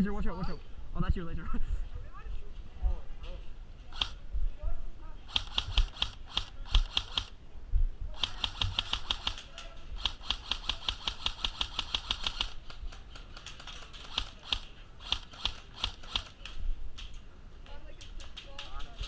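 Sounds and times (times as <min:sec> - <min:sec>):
airsoft gunfire bursts: 0:03.9 - 0:04.2, 0:05.3 - 0:07.4, 0:08.2 - 0:16.5
single airsoft shots: 0:03.9 - 0:04.2, 0:05.3 - 0:07.4, 0:08.2 - 0:12.6.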